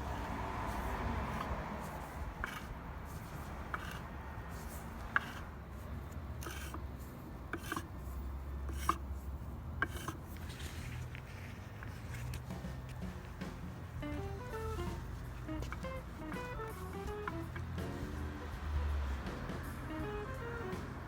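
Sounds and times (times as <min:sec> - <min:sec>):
rubbing or scraping: 0:00.0 - 0:21.0.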